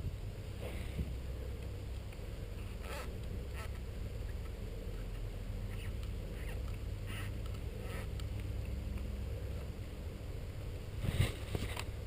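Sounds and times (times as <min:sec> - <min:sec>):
wind rumble on microphone: 0:00.0 - 0:12.0
faint short rustles: 0:11.0 - 0:12.0.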